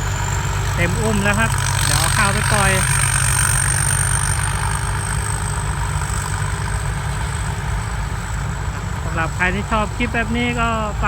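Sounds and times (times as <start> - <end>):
diesel engine running: 0.0 - 11.0.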